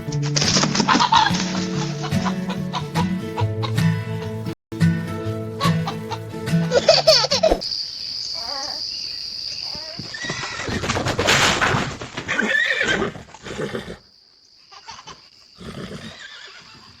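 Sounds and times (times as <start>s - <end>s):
animal cries: 8.4s - 8.9s.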